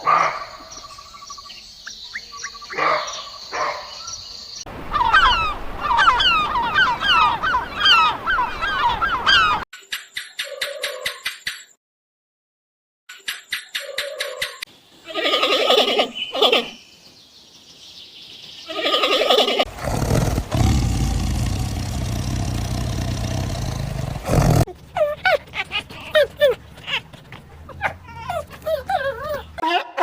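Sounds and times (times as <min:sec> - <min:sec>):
farm animal calls: 0:18.7 - 0:30.0
low rumbling noise: 0:19.7 - 0:24.6.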